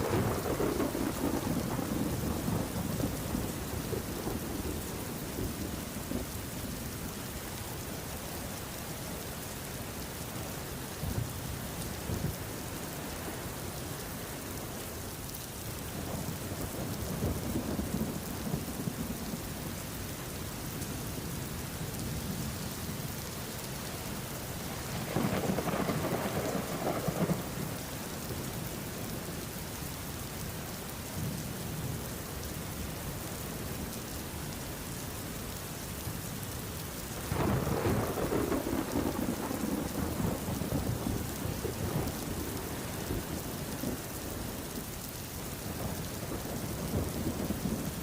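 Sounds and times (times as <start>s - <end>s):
rolling thunder: 0.0s - 6.3s, 24.9s - 27.8s, 37.2s - 44.6s
steady rain: 0.0s - 48.0s.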